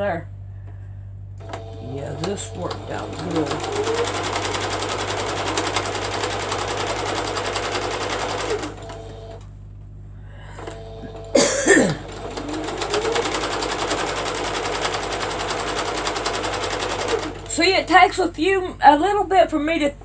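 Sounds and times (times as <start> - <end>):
sewing machine stitching: 1.4 - 9.4, 10.6 - 18.0.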